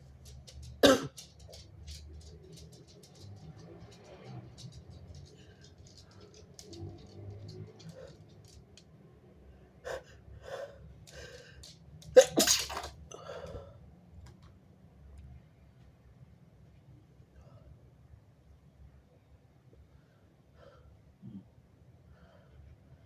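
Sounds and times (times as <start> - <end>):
short catching breaths: 9.9 - 11.7
person sneezing: 12.2 - 12.9.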